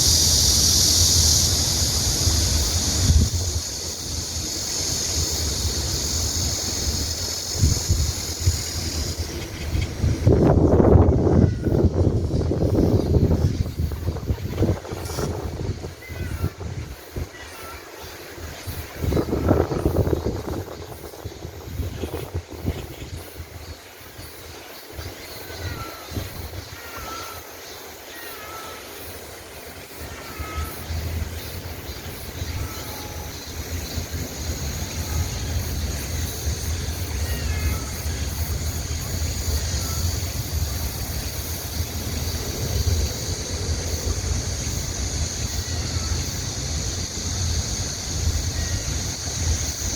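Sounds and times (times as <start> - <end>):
steady high hiss: 0.0 - 49.9.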